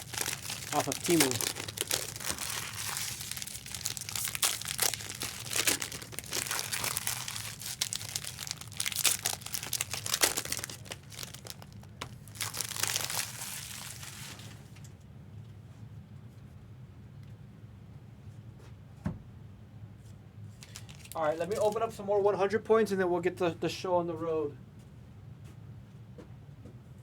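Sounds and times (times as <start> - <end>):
foil wrappers crinkling and tearing: 0.0 - 14.8, 20.6 - 22.0.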